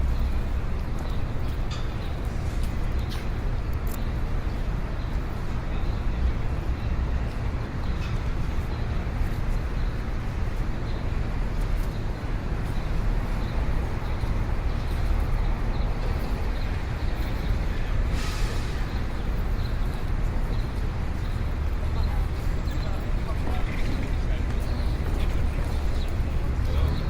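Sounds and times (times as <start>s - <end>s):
passing traffic rumble: 0.0s - 27.0s
brief hiss: 18.2s - 18.9s.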